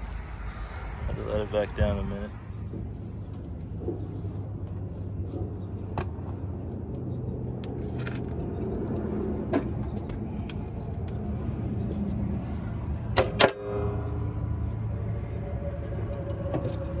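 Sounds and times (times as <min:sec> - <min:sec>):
diesel truck engine idling: 0:00.0 - 0:07.3.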